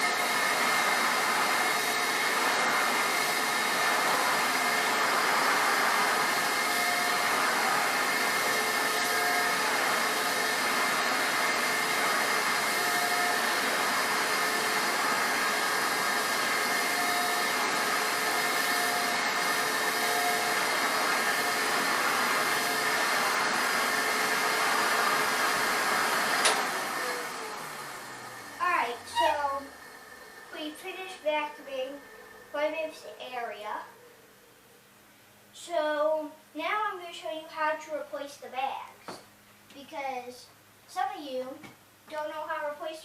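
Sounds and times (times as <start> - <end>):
vacuum cleaner running: 0.0 - 34.8.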